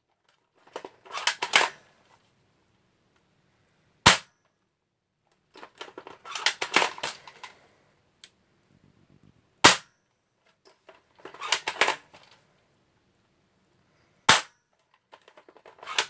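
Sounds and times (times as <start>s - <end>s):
bb pistol shots: 4.1s - 4.3s, 9.6s - 9.9s, 14.3s - 14.5s.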